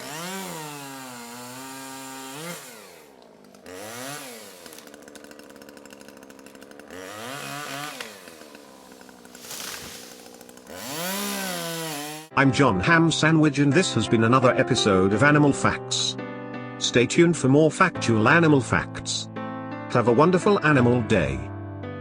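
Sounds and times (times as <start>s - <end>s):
chainsaw revving: 0.0s - 12.3s.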